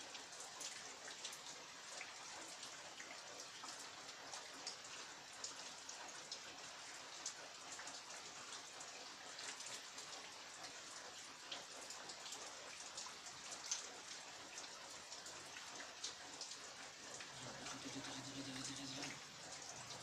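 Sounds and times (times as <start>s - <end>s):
raindrops pattering on surfaces: 0.0s - 20.0s
heavy rain hissing: 17.1s - 19.3s.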